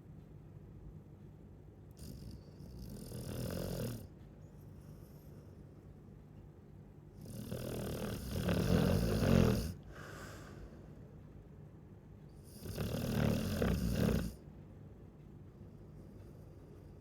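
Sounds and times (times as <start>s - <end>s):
dog snoring: 2.0s - 4.1s, 7.2s - 9.9s, 12.4s - 14.4s.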